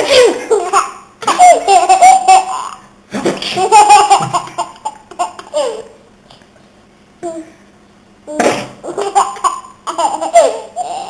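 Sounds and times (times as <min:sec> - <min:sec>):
baby laughing: 0:00.0 - 0:06.0, 0:08.8 - 0:11.0.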